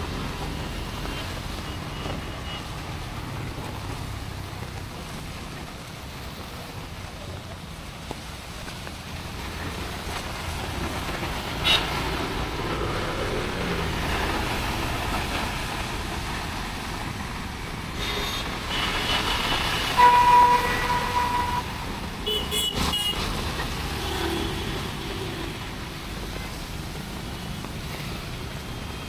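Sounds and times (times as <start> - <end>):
passing traffic: 0.0 - 29.0
rain: 0.0 - 29.0
short high horn toots: 18.0 - 23.2
vehicle horn steady note: 18.0 - 23.2.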